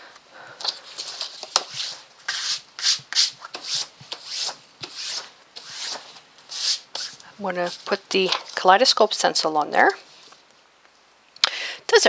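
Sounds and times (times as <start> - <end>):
hand rubbing paper: 1.0 - 8.6.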